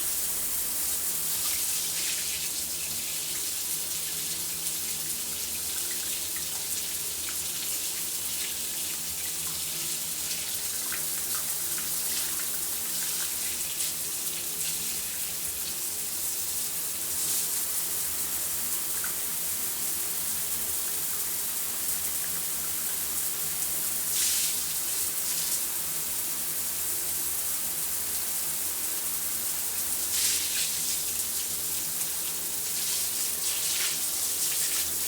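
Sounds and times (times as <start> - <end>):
shower water spray hissing: 16.7 - 18.4, 23.2 - 26.2, 29.1 - 35.0.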